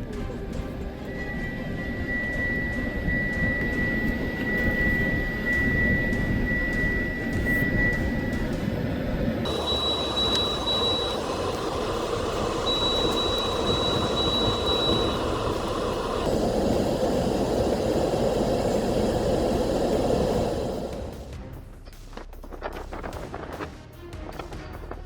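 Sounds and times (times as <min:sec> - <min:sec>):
wind blasting across microphone: 0:00.9 - 0:21.2
rapid electronic beeping: 0:09.4 - 0:16.3.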